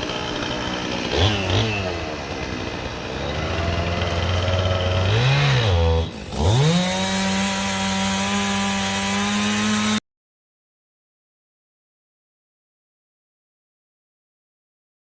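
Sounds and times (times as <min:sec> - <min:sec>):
chainsaw engine revving: 0:00.0 - 0:10.0.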